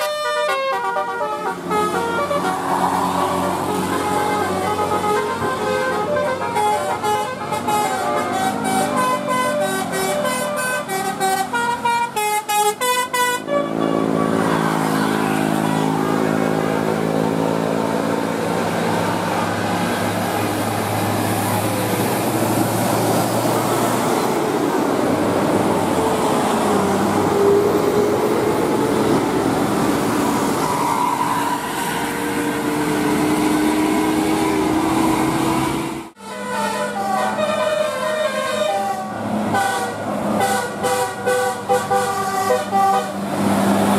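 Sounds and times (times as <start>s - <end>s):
bus musical horn tune: 0.0s - 17.0s, 35.7s - 43.3s
road traffic noise: 0.0s - 43.9s.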